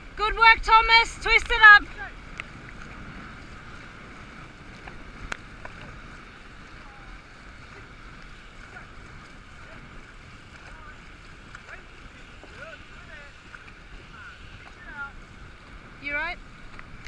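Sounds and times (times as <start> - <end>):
water around a boat: 0.0 - 17.0
wind buffeting microphone: 0.0 - 17.0
faint ticks: 2.3 - 2.9, 4.8 - 5.9.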